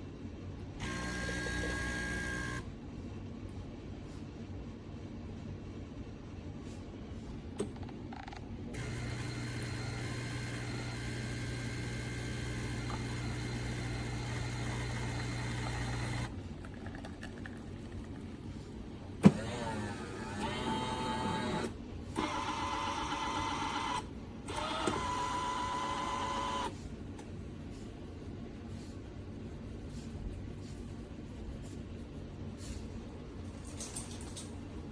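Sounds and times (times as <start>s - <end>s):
espresso machine motor hum: 0.8s - 2.7s, 8.7s - 18.4s, 19.2s - 26.8s
high machine whine: 0.8s - 2.7s.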